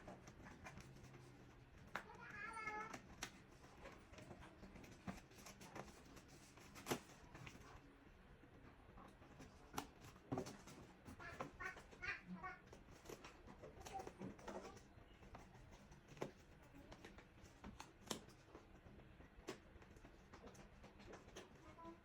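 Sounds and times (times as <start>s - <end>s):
faint clicks and taps: 0.0s - 22.0s.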